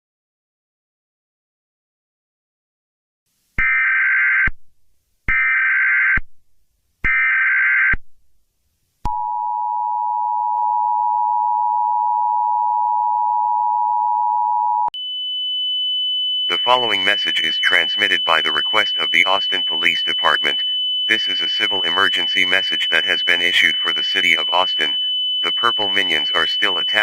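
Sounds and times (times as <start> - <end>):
warbling data tones: 16.5 - 27.0
two-tone attention signal: 21.1 - 27.0.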